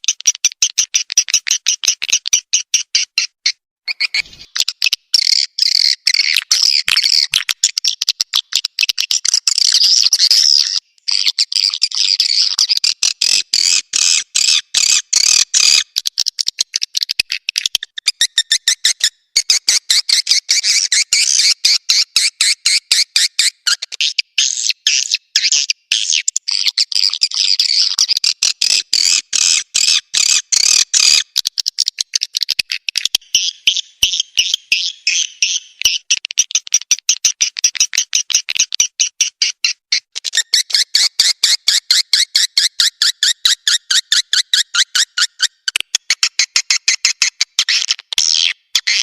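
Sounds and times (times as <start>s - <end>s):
high bird chirps: 0.7s - 13.0s, 22.4s - 47.0s.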